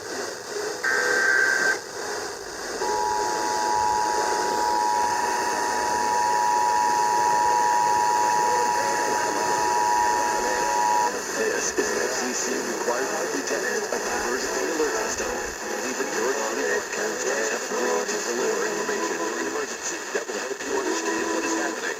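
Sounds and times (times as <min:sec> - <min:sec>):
radio static hiss: 0:00.0 - 0:21.9
screeching data bursts: 0:00.8 - 0:01.8, 0:02.8 - 0:12.0
two-tone attention signal: 0:00.8 - 0:01.8, 0:02.8 - 0:11.2.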